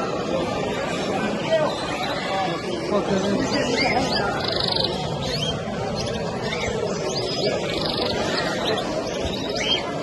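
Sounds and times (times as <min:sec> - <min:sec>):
low background murmur: 0:00.0 - 0:10.0
birds chirping and calling: 0:00.6 - 0:10.0
buzzy bird trill: 0:03.5 - 0:10.0.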